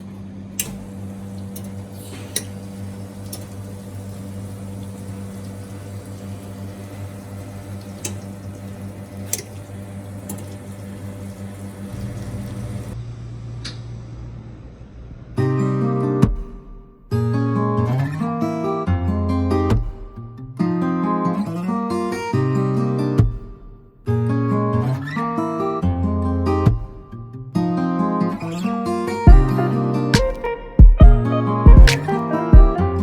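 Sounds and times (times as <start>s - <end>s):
espresso machine humming: 0.6s - 13.0s
water running: 0.6s - 13.0s.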